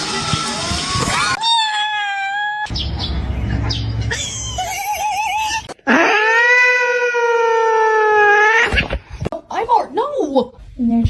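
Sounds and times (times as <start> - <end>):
animal wavering cry: 3.6 - 8.7.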